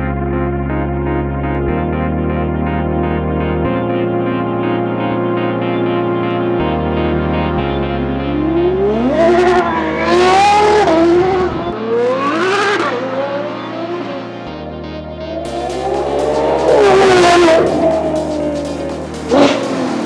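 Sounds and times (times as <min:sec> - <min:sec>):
background music with bass line: 0:00.0 - 0:20.0
car engine revving: 0:08.3 - 0:14.2, 0:15.2 - 0:20.0.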